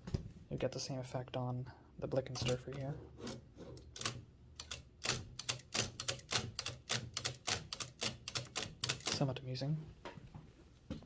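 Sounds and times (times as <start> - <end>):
typewriter carriage clicks: 3.9 - 9.3.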